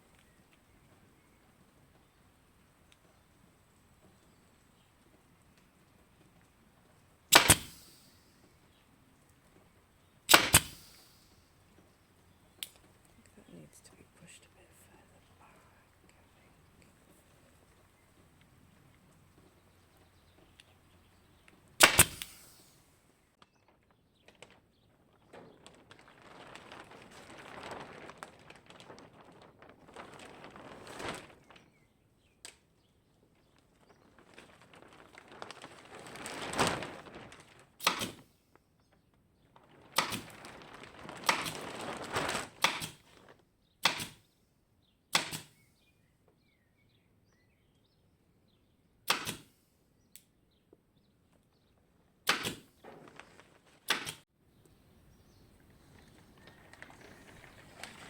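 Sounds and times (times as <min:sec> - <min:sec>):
rustling handling noise: 0:00.0 - 0:43.5, 0:52.6 - 0:58.0
pneumatic stapler firing: 0:07.3 - 0:08.1, 0:10.3 - 0:11.2, 0:21.8 - 0:22.7, 0:37.8 - 0:38.2, 0:43.8 - 0:44.2, 0:45.1 - 0:45.6, 0:49.1 - 0:49.5, 0:52.3 - 0:52.7.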